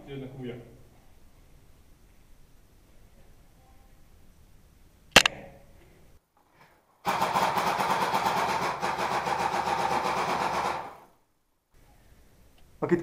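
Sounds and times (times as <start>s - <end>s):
airsoft rifle shot: 5.2s - 5.5s.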